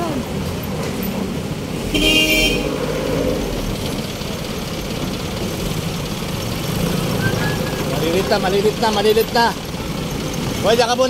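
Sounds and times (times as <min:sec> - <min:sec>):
street traffic rumble: 0:00.0 - 0:11.0
vehicle horn honk: 0:01.8 - 0:02.8.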